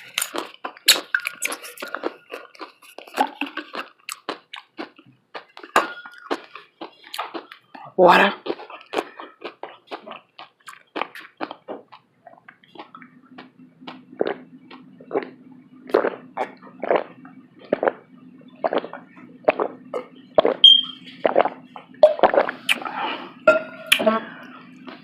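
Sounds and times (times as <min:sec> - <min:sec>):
faint low hum: 0:00.0 - 0:25.0
person gulping water: 0:00.0 - 0:25.0.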